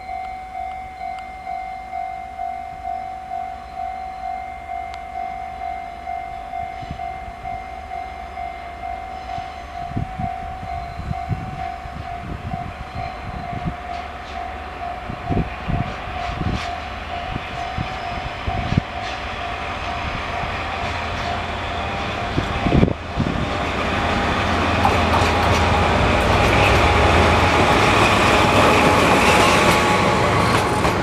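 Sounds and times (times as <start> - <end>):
level crossing alarm bell: 0.0 - 23.0
train wheels knocking on rail joints: 22.2 - 31.0.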